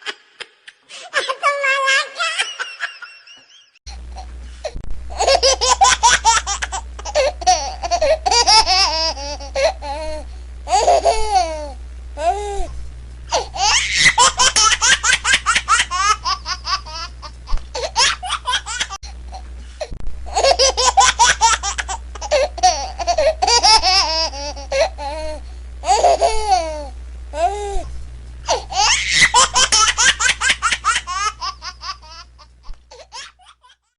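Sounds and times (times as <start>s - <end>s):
steady low hum: 3.9s - 33.6s
baby giggling: 5.1s - 10.1s, 10.7s - 11.7s, 13.3s - 19.4s, 20.3s - 27.5s, 28.5s - 32.3s.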